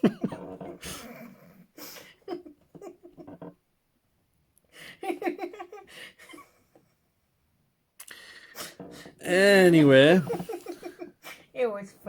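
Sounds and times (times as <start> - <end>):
person laughing: 10.0 - 11.1.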